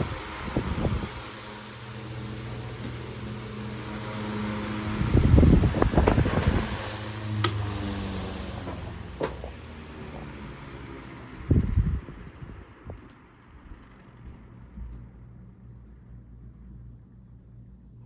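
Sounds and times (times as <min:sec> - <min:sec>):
table fan motor humming: 0:00.0 - 0:12.4
low rumbling: 0:00.0 - 0:18.0.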